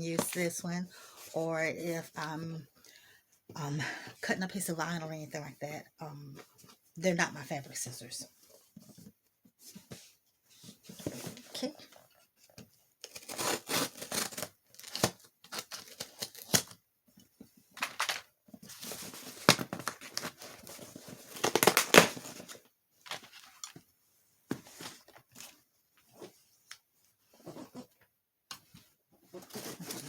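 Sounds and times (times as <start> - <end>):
paper packaging tearing: 13.0 - 16.8, 19.1 - 22.4.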